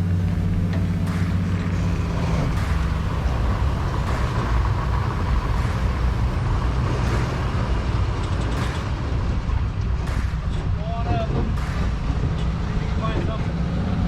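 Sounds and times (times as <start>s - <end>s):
diesel pickup engine pulling hard: 0.0s - 14.0s.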